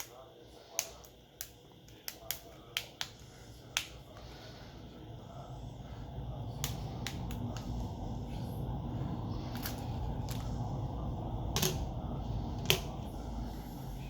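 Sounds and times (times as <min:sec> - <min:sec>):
low rumble: 0:03.3 - 0:14.0.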